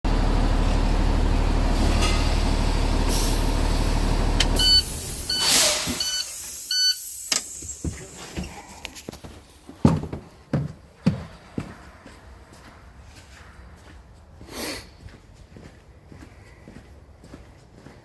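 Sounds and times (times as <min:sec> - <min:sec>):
diesel engine idling: 0:00.1 - 0:05.4
short electronic beeps: 0:04.6 - 0:07.1.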